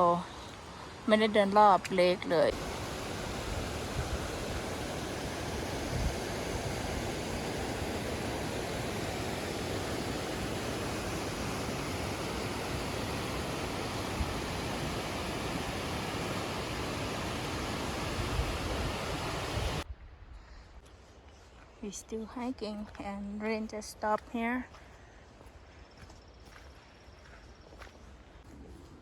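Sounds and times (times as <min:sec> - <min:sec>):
wind buffeting microphone: 0:02.5 - 0:20.7.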